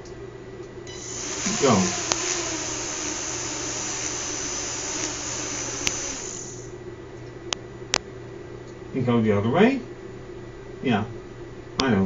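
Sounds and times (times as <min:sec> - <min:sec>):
small electric motor whirring: 0:00.9 - 0:06.8.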